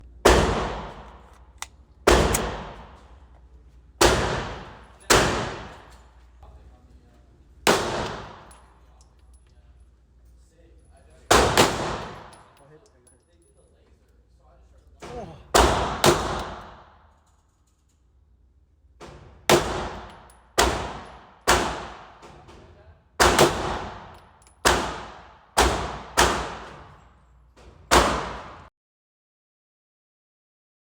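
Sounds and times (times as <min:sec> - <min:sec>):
loud gunshots: 0:00.2 - 0:01.2, 0:02.1 - 0:03.0, 0:04.0 - 0:05.9, 0:07.7 - 0:08.5, 0:11.3 - 0:12.3, 0:15.5 - 0:16.9, 0:19.5 - 0:22.2, 0:23.2 - 0:26.9, 0:27.9 - 0:28.7.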